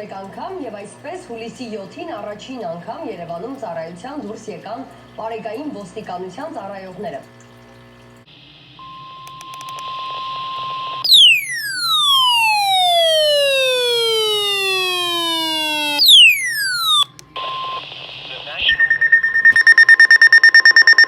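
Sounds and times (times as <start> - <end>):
whistle falling in pitch: 10.9 - 17.1
steady high beep: 11.1 - 17.1, 18.7 - 21.0
radio hiss: 17.3 - 19.2.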